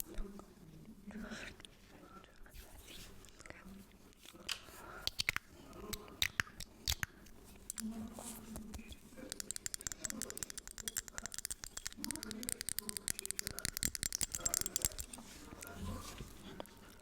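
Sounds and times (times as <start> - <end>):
light tapping and clicking: 5.1 - 17.0.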